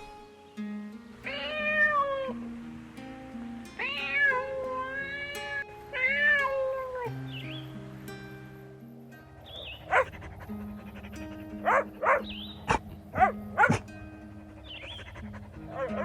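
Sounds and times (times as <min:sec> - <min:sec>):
soft background music: 0:00.0 - 0:16.0
cat meowing: 0:01.2 - 0:02.5, 0:03.8 - 0:07.2, 0:14.5 - 0:16.0.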